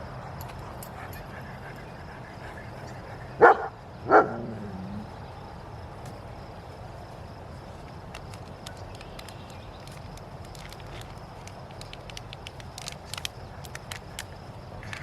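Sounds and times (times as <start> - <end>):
dog barking: 3.4 - 4.6.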